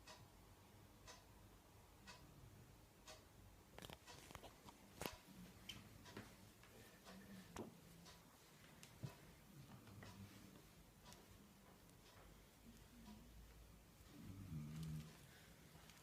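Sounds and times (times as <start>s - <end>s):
clock ticking faintly: 0.0s - 16.0s
small clicks and rustles: 3.1s - 6.7s.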